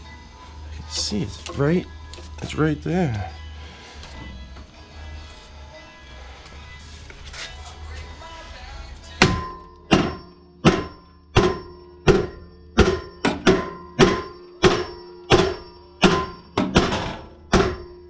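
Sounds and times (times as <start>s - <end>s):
hammer striking metal: 9.2s - 18.0s.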